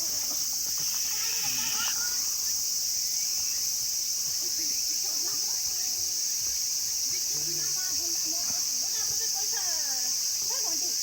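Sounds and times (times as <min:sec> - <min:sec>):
insects shrilling: 0:00.0 - 0:11.0.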